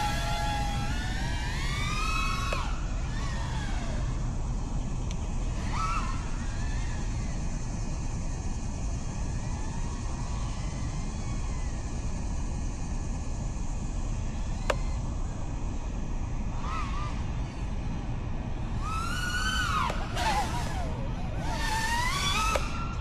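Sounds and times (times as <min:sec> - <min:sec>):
quadcopter motors whining: 0:00.0 - 0:23.0.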